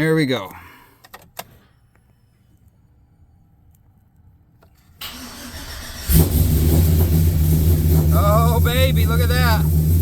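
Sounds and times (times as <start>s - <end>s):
engine running loudly: 6.1s - 10.0s.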